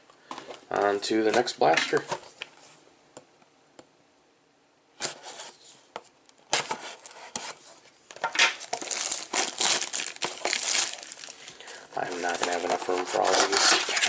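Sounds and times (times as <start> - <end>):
trading cards being handled: 8.4 - 14.0.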